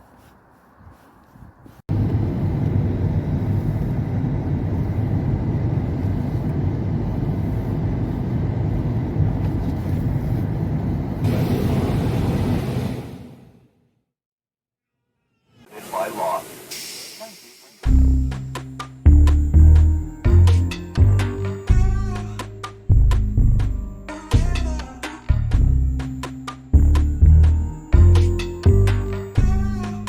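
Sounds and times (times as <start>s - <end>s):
vehicle low rumble: 0.0s - 13.3s, 17.9s - 30.0s
high hiss: 15.7s - 18.0s.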